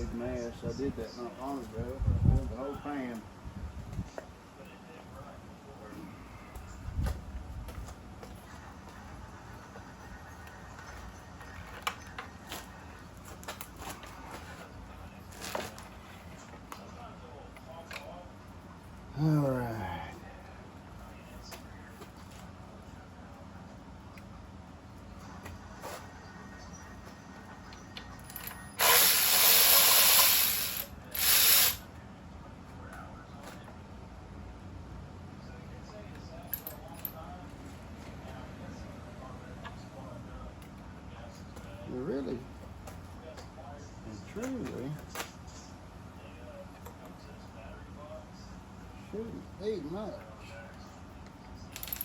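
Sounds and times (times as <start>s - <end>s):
steady low hum: 0.0s - 52.0s
power ratchet spinning bolts: 28.2s - 31.8s, 51.8s - 52.0s.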